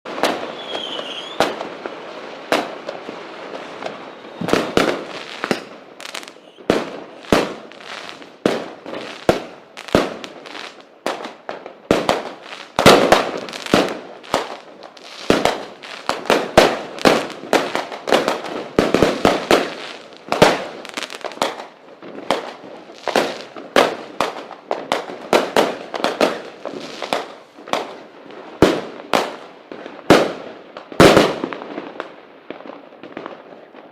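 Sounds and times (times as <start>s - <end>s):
falling firework whistle: 0.1s - 1.7s, 3.5s - 8.2s
fireworks bangs: 0.1s - 33.9s
fireworks crackling: 0.1s - 33.9s.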